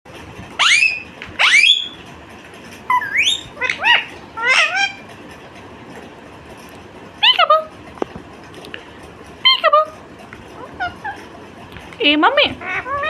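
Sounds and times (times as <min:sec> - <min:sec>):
parakeet chirping: 0:00.6 - 0:02.0, 0:02.9 - 0:05.0, 0:12.3 - 0:13.0.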